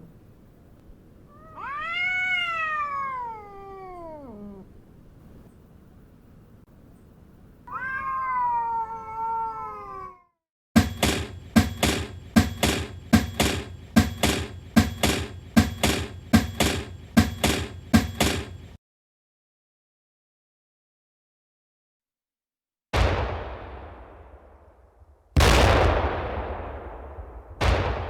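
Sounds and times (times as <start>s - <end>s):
cat meowing: 1.3s - 4.8s, 7.6s - 10.4s
short sharp hits: 10.8s - 18.8s.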